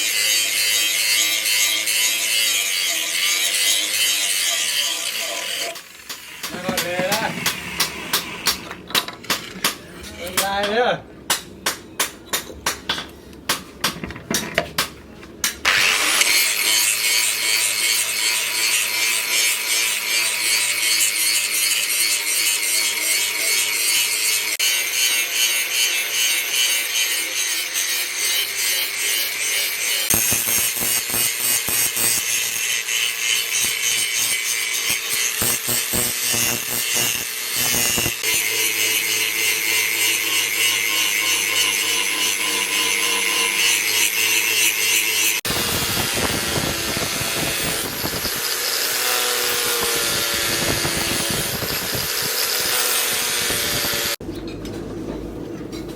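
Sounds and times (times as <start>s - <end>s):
power grinder grinding steel: 0.0s - 8.5s, 15.6s - 54.2s.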